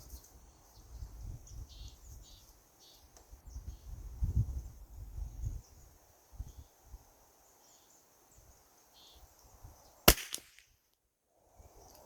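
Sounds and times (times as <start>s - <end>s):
faint insects chirping: 0.0s - 10.0s
rifle shot with echo: 10.1s - 10.6s.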